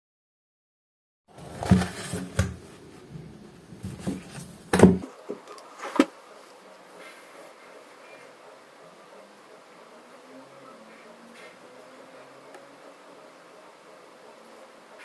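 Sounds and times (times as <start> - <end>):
objects knocking and clattering: 3.8 - 6.2.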